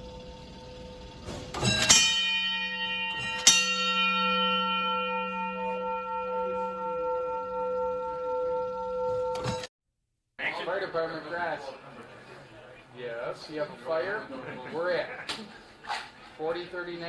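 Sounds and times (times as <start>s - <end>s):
fire alarm bell ringing: 0.0s - 9.7s.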